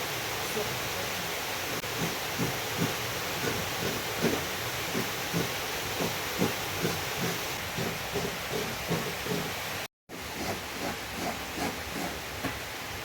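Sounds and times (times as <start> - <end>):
heavy rain hissing: 0.0 - 10.4.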